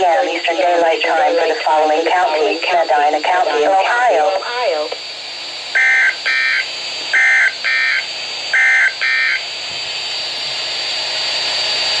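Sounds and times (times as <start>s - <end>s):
radio static hiss: 0.0s - 9.5s
faint high whine: 0.0s - 12.0s
buzzy digital data bursts: 5.8s - 9.4s.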